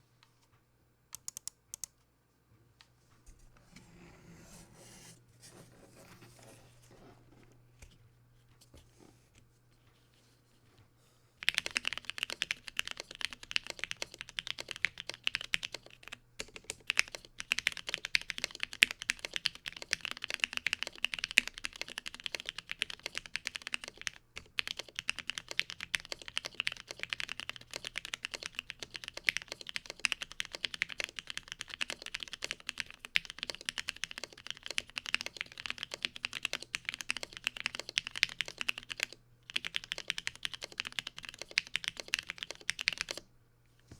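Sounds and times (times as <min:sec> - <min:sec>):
mechanical keyboard typing: 0:01.2 - 0:01.9, 0:11.4 - 0:43.2.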